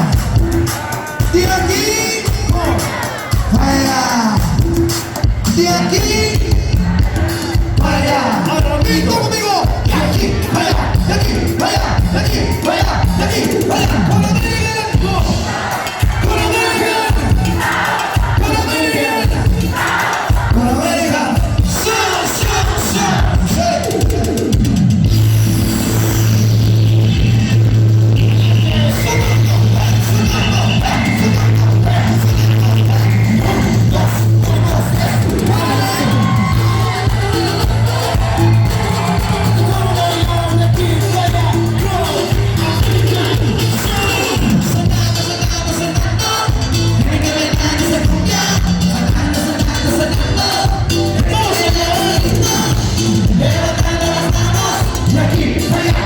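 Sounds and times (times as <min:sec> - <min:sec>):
live cumbia band playing: 0:00.0 - 0:56.0
steady bass line: 0:00.0 - 0:56.0
person singing: 0:28.3 - 0:56.0.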